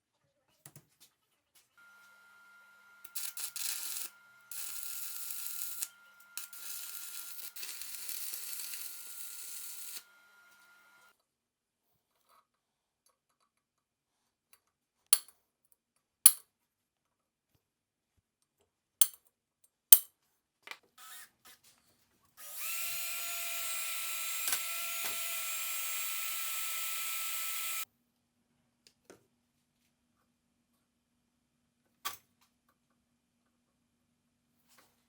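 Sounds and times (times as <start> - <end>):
electric power tool running: 1.8 - 11.1, 22.4 - 27.8.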